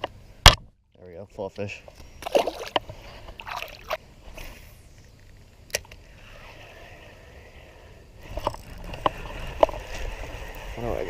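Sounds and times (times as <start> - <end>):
spinning reel whirring: 6.2 - 11.0.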